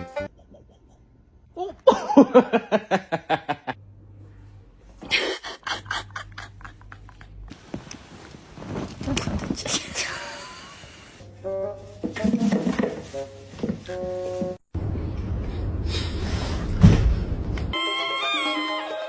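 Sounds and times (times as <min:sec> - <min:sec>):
person laughing: 0:00.2 - 0:03.8.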